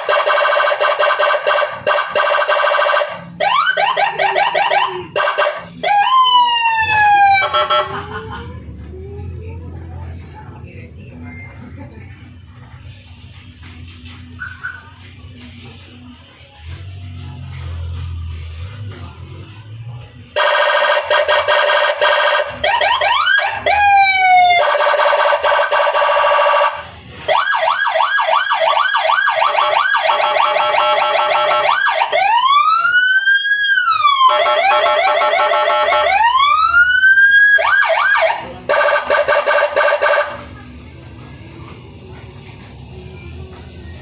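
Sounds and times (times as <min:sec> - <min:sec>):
electronic police siren: 0:00.0 - 0:08.2, 0:20.4 - 0:40.4.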